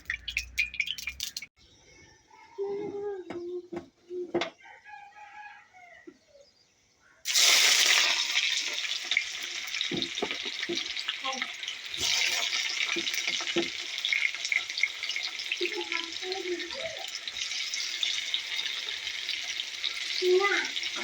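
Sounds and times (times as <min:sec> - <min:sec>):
stirring clicks: 0:00.0 - 0:01.5
food sizzling in a pan: 0:07.3 - 0:21.0.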